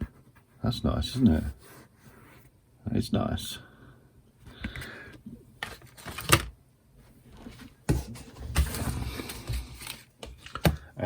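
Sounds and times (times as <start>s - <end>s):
plastic packaging rustling: 5.6s - 6.5s, 8.2s - 10.9s.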